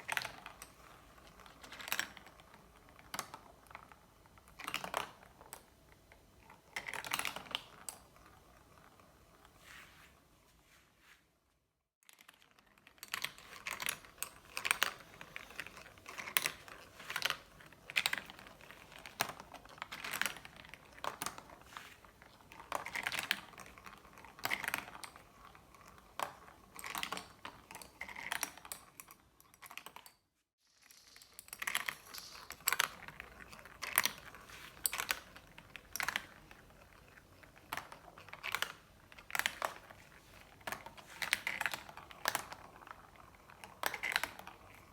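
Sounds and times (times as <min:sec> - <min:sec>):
marbles clicking along track: 0:30.8 - 0:44.9.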